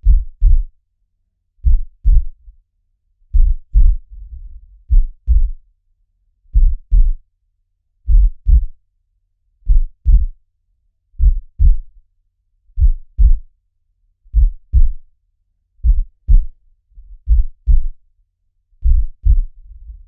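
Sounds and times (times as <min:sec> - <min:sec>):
slow heartbeat: 0:00.0 - 0:00.7, 0:01.6 - 0:02.5, 0:03.3 - 0:05.6, 0:06.5 - 0:07.2, 0:08.1 - 0:08.8, 0:09.7 - 0:10.4, 0:11.2 - 0:12.0, 0:12.8 - 0:13.5, 0:14.3 - 0:15.1, 0:15.8 - 0:18.0, 0:18.8 - 0:20.0.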